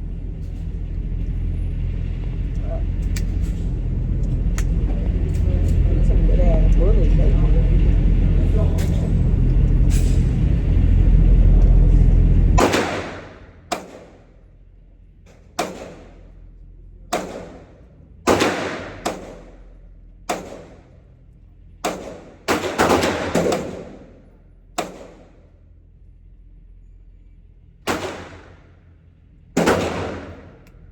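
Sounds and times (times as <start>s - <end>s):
vehicle road noise rumble: 0.0s - 30.9s
gunshots with echo: 12.6s - 14.2s, 15.6s - 16.2s, 17.1s - 19.6s, 20.3s - 20.8s, 21.8s - 24.2s, 24.8s - 25.4s, 27.9s - 28.7s, 29.6s - 30.6s.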